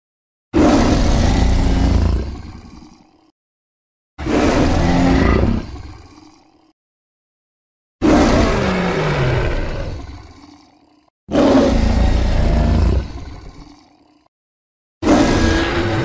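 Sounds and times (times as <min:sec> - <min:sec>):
deep rough dinosaur roar: 0:00.6 - 0:03.3, 0:04.2 - 0:06.7, 0:08.0 - 0:14.3, 0:15.0 - 0:16.0.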